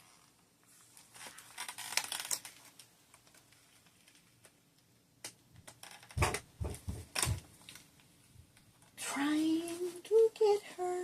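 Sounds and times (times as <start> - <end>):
packaging rustling and crinkling: 0.0 - 4.6.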